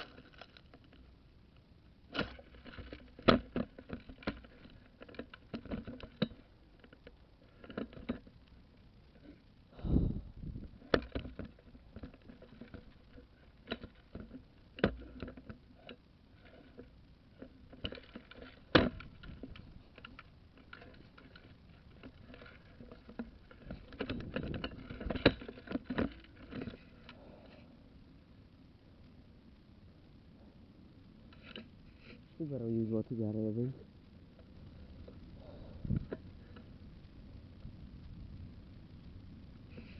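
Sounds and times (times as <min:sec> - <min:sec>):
rustling of movement: 0:00.0 - 0:39.9
knocks and clicks of gear: 0:02.1 - 0:08.5, 0:10.6 - 0:27.6.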